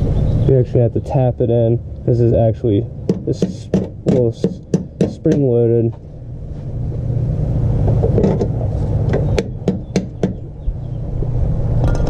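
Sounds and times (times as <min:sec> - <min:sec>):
low rumble: 0:10.4 - 0:12.0.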